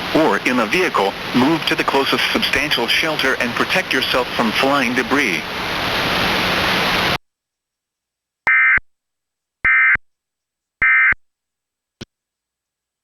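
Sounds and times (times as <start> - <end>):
steady hiss: 0.0 - 7.2.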